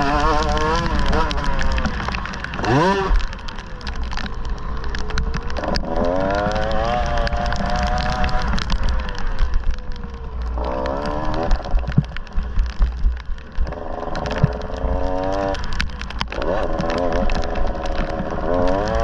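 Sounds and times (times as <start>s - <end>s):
dirt bike engine revving: 0.0s - 1.8s, 2.5s - 3.2s
low rumble: 0.0s - 19.0s.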